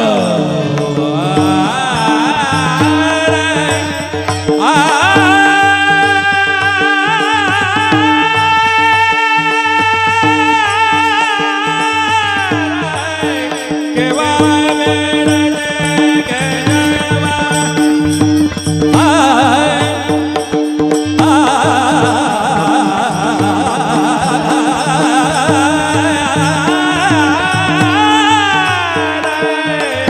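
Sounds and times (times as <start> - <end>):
harmonium drone: 0.0 - 30.0
person singing a melody: 0.0 - 30.0
drum beat: 1.3 - 30.0.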